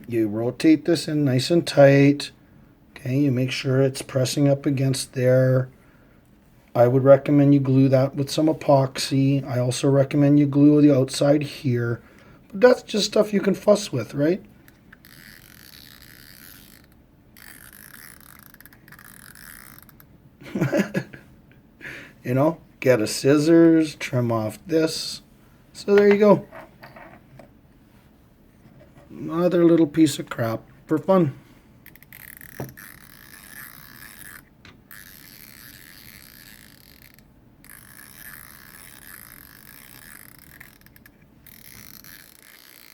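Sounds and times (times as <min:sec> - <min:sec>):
spinner ratcheting clatter: 0:15.0 - 0:20.1, 0:31.8 - 0:42.9.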